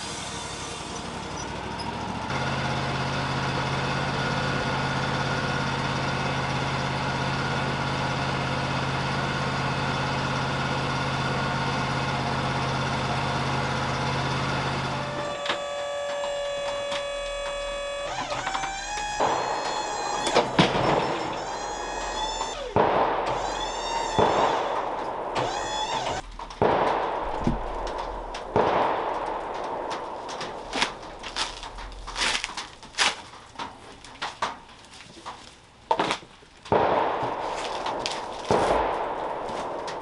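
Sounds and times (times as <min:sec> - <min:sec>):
sawmill engine running: 0:00.0 - 0:40.0
high gliding squeaks: 0:15.0 - 0:26.4
sharp knocks and clunks: 0:15.1 - 0:40.0.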